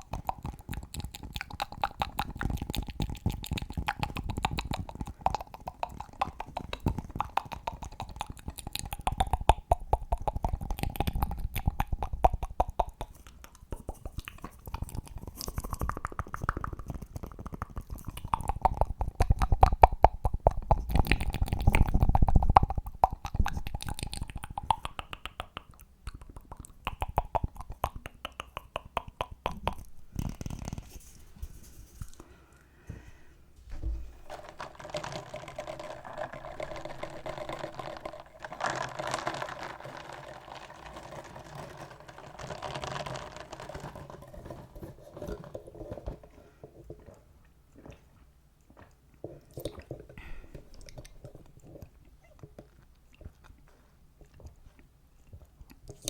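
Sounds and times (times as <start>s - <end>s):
fast tapping clicks: 0.0s - 30.8s
mouth sounds: 0.0s - 32.2s
soft hissy rustling: 30.8s - 34.5s.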